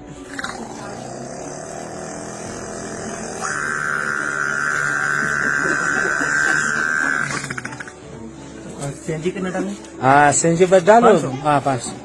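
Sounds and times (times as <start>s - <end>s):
man imitating generator drone: 0.0s - 7.9s
sputtering rattle: 0.2s - 7.9s.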